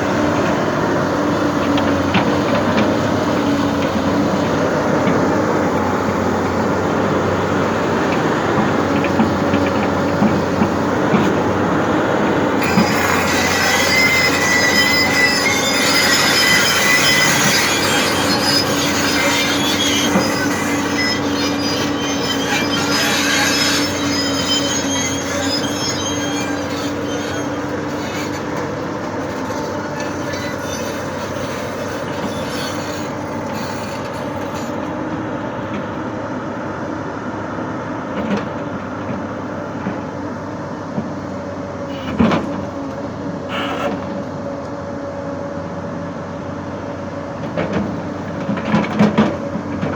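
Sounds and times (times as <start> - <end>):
excavator engine running: 0.0 - 49.9
excavator tracks squealing and grinding: 0.0 - 49.9.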